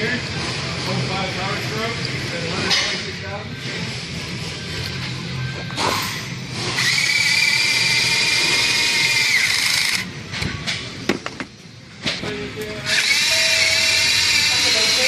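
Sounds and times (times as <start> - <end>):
power tool motor whining: 6.6 - 10.1, 12.9 - 15.0.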